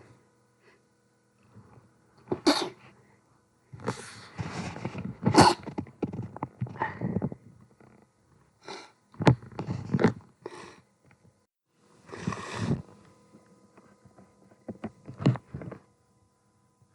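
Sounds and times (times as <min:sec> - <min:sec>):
person sneezing: 0:02.3 - 0:02.8, 0:05.3 - 0:05.7.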